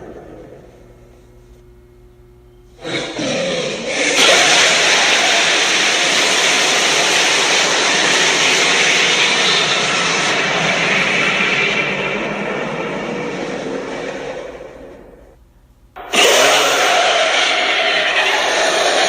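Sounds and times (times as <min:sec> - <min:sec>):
loud rushing noise: 0:04.2 - 0:15.4.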